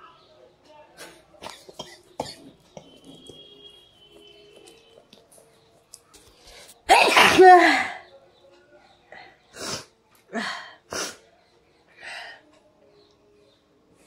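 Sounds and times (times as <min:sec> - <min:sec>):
woman sneezing loudly: 0:06.9 - 0:07.9.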